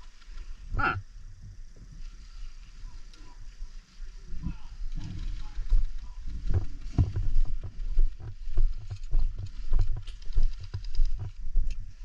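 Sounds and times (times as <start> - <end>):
footsteps with rattling gear: 4.7 - 12.0.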